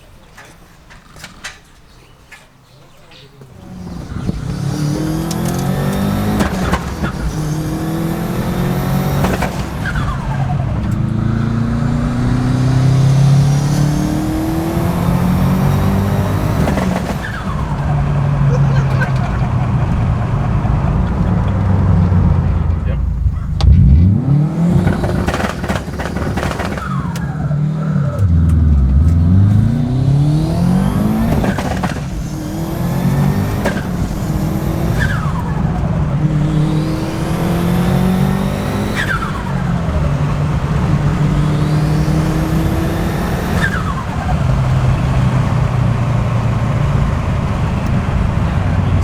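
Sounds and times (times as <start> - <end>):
car engine accelerating: 3.1 - 49.0.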